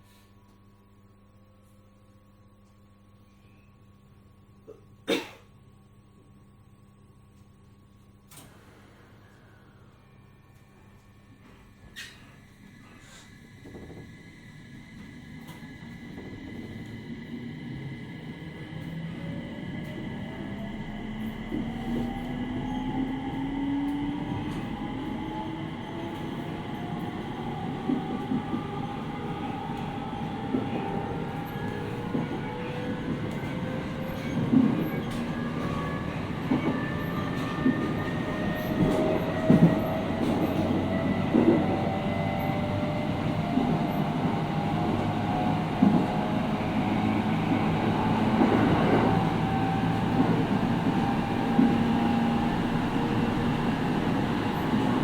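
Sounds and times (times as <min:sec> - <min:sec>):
train running rumble: 0:12.8 - 0:55.0.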